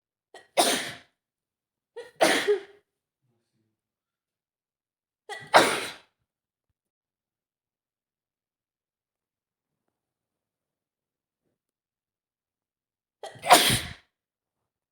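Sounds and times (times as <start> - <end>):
woman sneezing: 0.6 - 1.1, 2.0 - 2.7, 5.3 - 6.1, 13.2 - 14.0.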